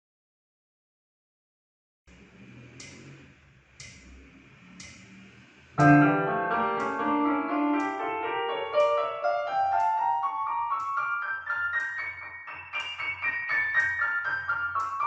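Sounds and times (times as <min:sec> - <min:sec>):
faint clicks: 0:02.7 - 0:12.2, 0:12.8 - 0:15.0
piano notes climbing in pitch: 0:05.8 - 0:15.0.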